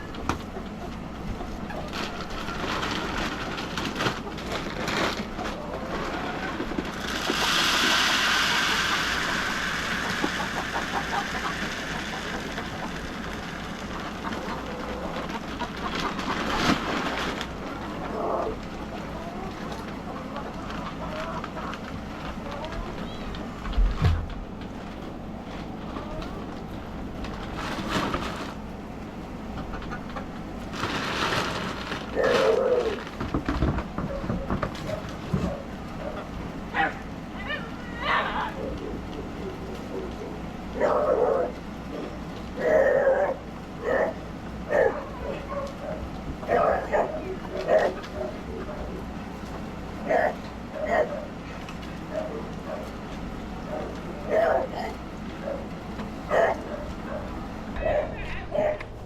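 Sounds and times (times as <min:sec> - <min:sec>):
rustling and scraping: 0:00.0 - 0:37.0
chicken feed pouring into feeder: 0:01.6 - 0:22.7, 0:27.4 - 0:28.6, 0:30.7 - 0:33.8
chicken squawking: 0:05.4 - 0:16.8, 0:34.8 - 0:49.1, 0:53.6 - 0:59.0.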